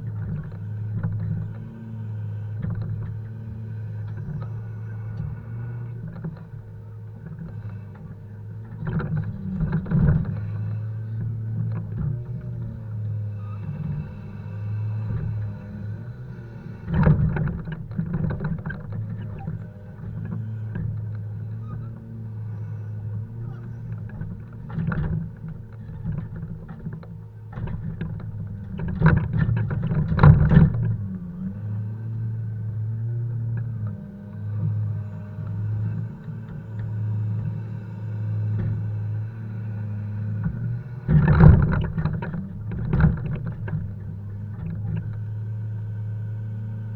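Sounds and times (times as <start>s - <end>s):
logs knocking and clunking: 40.2s - 45.4s.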